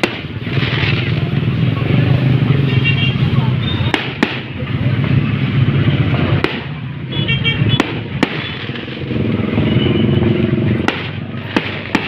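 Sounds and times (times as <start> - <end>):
firecracker bangs: 0.0 - 1.2, 3.8 - 4.6, 6.1 - 9.7, 10.7 - 12.0.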